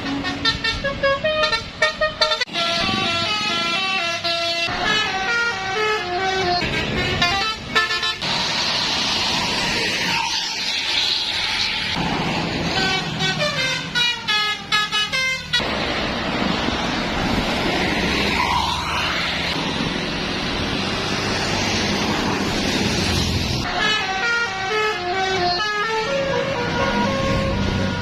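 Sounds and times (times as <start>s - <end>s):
bus horn playing a tune: 0.0s - 8.2s, 12.7s - 15.6s, 23.7s - 28.0s
steady rushing noise: 8.2s - 13.2s.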